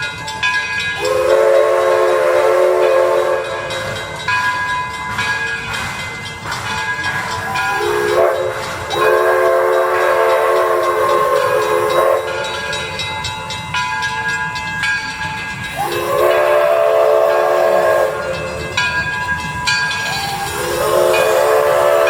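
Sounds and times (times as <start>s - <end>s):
steam whistle blasts: 1.0s - 4.0s, 7.4s - 13.0s, 15.7s - 19.0s, 20.0s - 22.0s.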